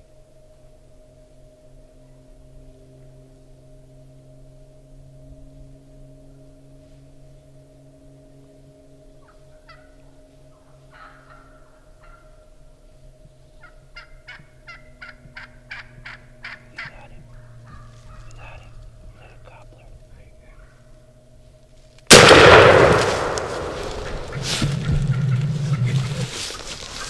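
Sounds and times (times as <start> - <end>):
turkey yelping: 10.9 - 12.4, 13.6 - 21.0, 24.0 - 27.0.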